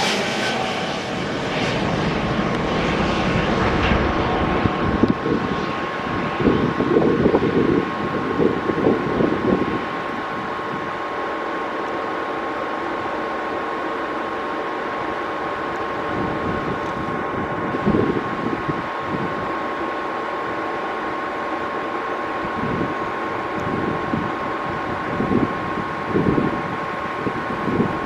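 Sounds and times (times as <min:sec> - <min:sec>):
engine rush: 0:00.0 - 0:08.2
jet engines high whine: 0:00.0 - 0:28.0
wind gust on microphone: 0:00.4 - 0:10.9, 0:23.6 - 0:28.0.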